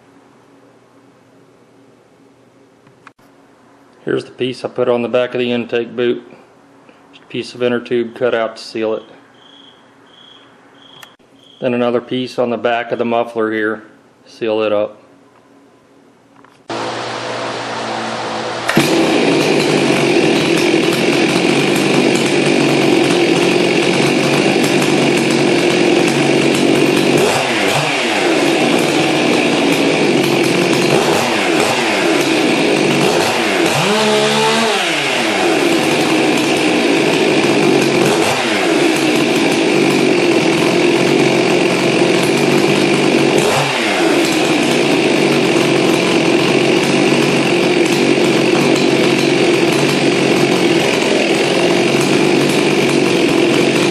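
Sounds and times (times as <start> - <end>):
chainsaw engine running: 16.7 - 53.9.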